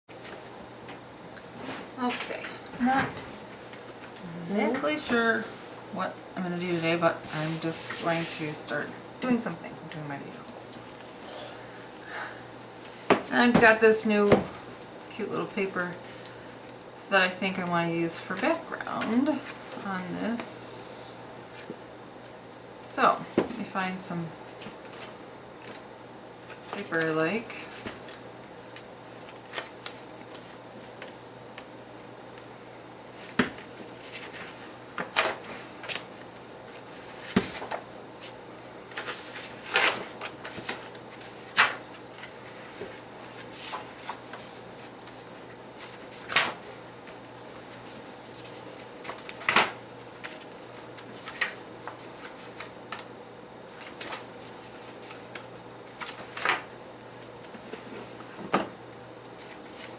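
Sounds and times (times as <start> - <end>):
paper sheets rustling: 6.5 - 8.7, 15.2 - 20.5, 24.5 - 25.8, 26.4 - 31.0, 33.1 - 53.1, 53.7 - 59.9.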